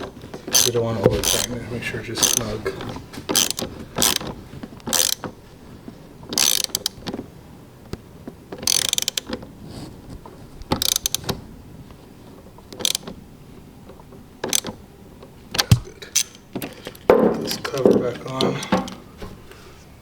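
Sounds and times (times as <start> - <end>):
socket ratchet clicking: 3.3 - 4.3, 4.9 - 5.2, 6.4 - 7.0, 8.7 - 9.3, 10.8 - 11.2, 12.8 - 13.1, 15.6 - 16.4.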